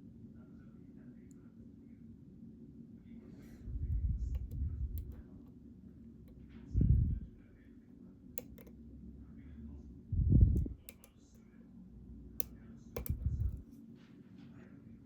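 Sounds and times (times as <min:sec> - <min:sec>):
lock-picking tools clicking: 0:04.4 - 0:05.2, 0:08.4 - 0:08.7, 0:10.6 - 0:11.4, 0:12.4 - 0:13.6.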